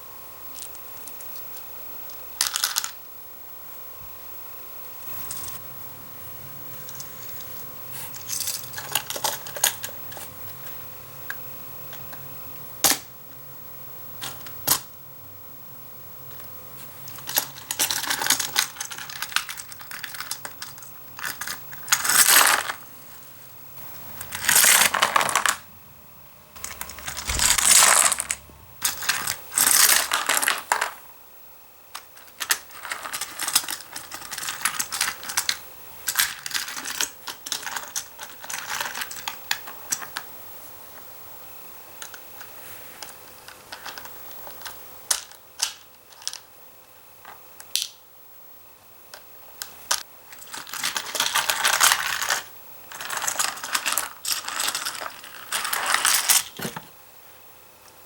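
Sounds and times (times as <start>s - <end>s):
plastic toy clattering rattles: 26.6s - 31.0s, 50.3s - 56.7s.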